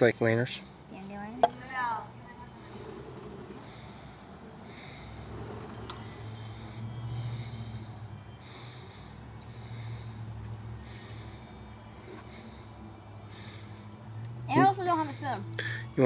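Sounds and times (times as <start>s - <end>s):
close breathing: 2.5s - 14.2s, 14.8s - 16.0s.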